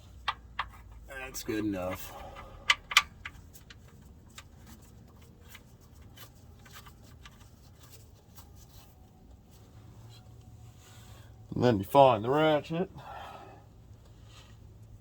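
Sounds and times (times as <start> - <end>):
small parts ticking and tapping: 0.2 - 7.9.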